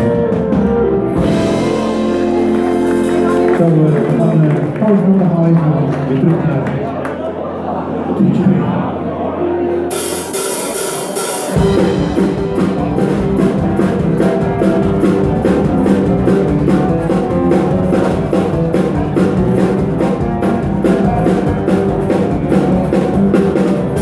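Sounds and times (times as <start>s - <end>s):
bass line: 0.0s - 5.3s, 7.6s - 24.0s
drum kit beat: 0.8s - 4.2s, 9.9s - 24.0s
live dance band playing: 0.9s - 4.7s, 9.9s - 24.0s.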